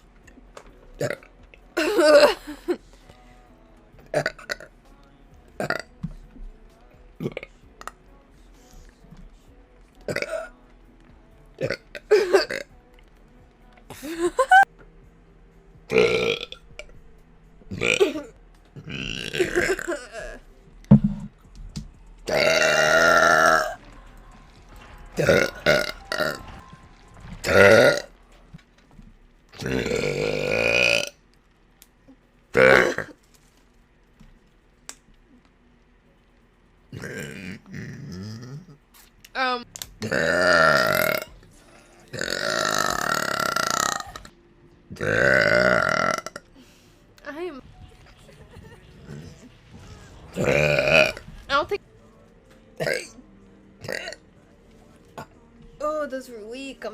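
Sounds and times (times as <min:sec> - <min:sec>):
woman burping: 0:01.0 - 0:02.8, 0:04.1 - 0:04.7, 0:05.6 - 0:05.9, 0:10.1 - 0:10.6, 0:11.6 - 0:12.7, 0:15.9 - 0:16.6, 0:17.7 - 0:20.4, 0:22.3 - 0:23.8, 0:27.4 - 0:28.1, 0:29.6 - 0:31.1, 0:32.6 - 0:33.2, 0:40.0 - 0:41.3, 0:42.1 - 0:44.3, 0:45.0 - 0:46.6, 0:50.4 - 0:51.2, 0:52.8 - 0:53.2, 0:53.8 - 0:54.2.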